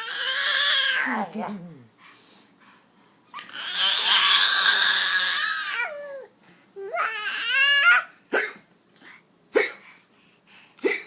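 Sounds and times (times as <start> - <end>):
baby crying: 0.0 - 1.1, 3.4 - 8.1
baby squealing: 3.4 - 6.1.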